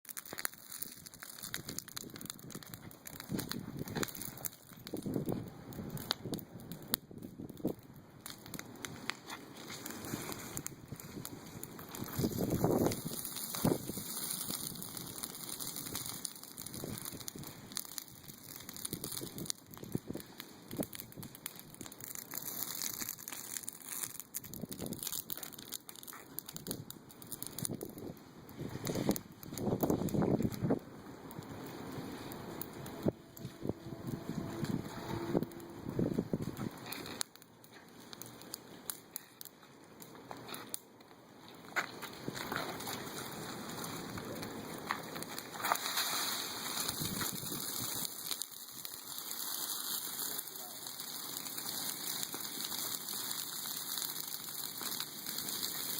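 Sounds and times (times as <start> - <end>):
bonfire crackling: 0.0 - 55.9
hiss of burning: 0.1 - 55.9.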